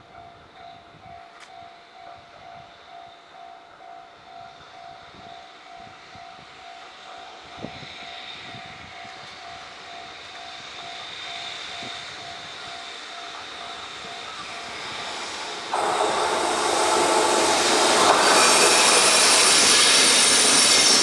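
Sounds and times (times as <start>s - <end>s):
approaching train rushing: 5.0s - 21.0s.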